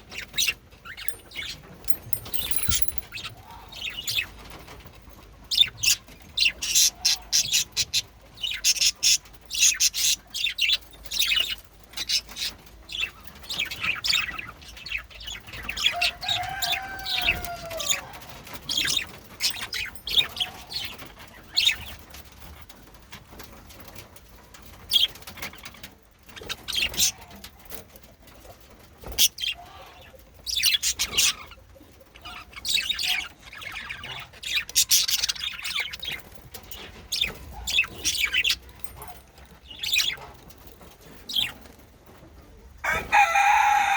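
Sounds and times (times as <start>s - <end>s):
budgerigars chattering and chirping: 30.5s - 38.7s.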